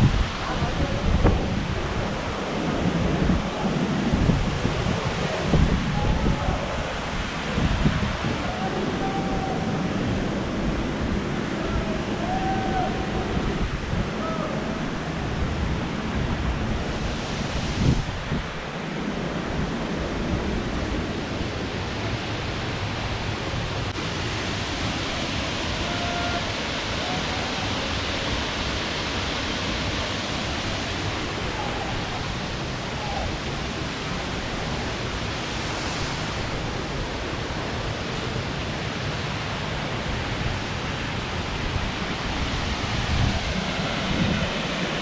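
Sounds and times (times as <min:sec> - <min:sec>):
waterfall rushing: 0:00.0 - 0:45.0.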